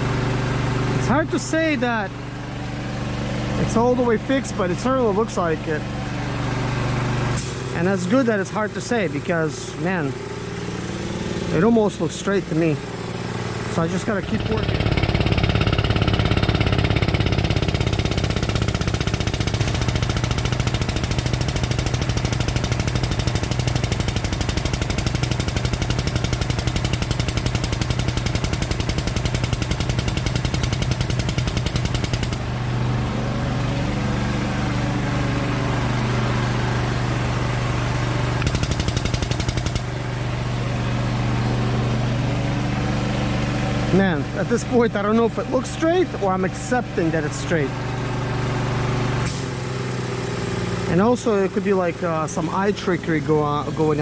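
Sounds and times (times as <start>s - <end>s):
engine running: 0.0s - 54.0s
fast mechanical rattling: 10.6s - 32.5s, 38.4s - 40.0s.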